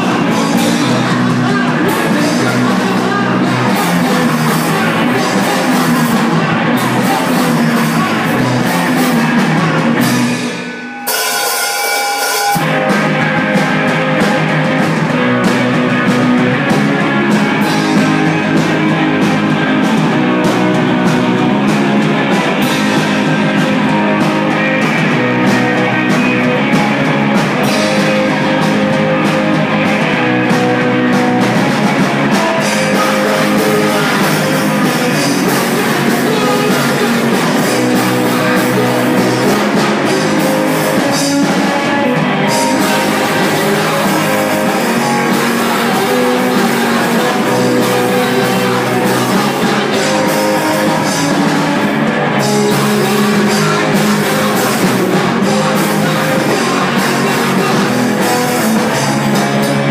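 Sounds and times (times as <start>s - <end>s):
person singing: 0.0s - 11.2s, 12.4s - 59.9s
electric guitar: 0.0s - 59.9s
loud rock music: 0.0s - 59.9s.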